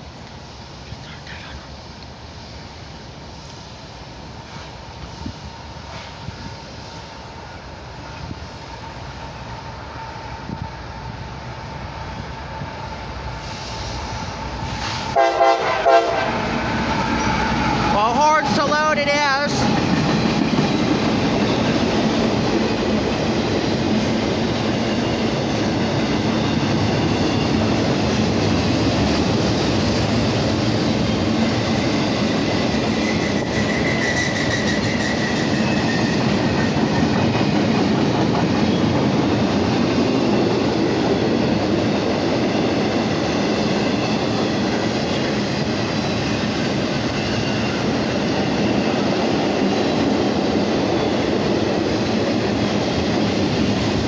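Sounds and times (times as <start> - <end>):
freight train rolling past: 0.0 - 54.0
faint wheel squeal: 32.9 - 36.2.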